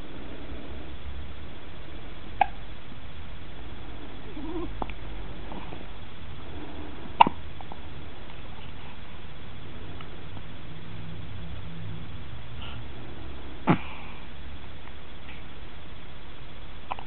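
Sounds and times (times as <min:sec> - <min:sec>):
baby hiccuping: 0:02.4 - 0:02.6, 0:07.2 - 0:07.4.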